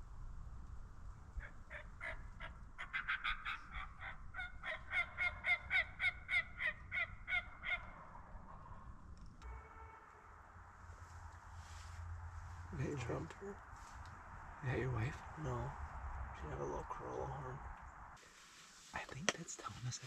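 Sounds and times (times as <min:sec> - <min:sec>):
turkey hen yelping: 0:01.4 - 0:08.2.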